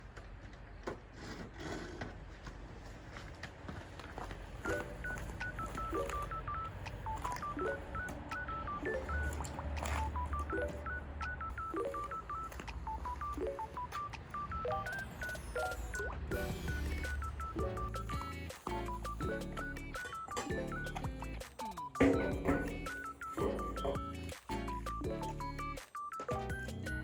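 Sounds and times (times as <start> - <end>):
light electronic tune: 4.6 - 27.0
bass line: 22.0 - 25.8.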